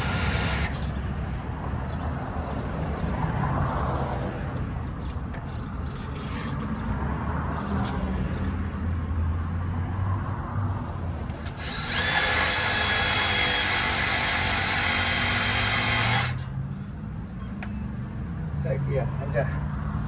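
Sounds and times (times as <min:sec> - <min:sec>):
power drill driving screw: 0:00.0 - 0:08.8, 0:11.3 - 0:16.5.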